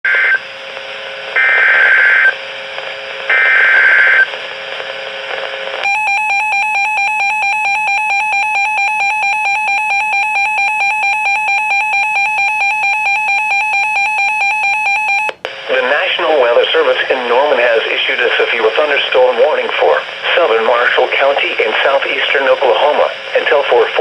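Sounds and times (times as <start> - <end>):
radio hiss: 0.1 - 5.8, 15.4 - 24.0.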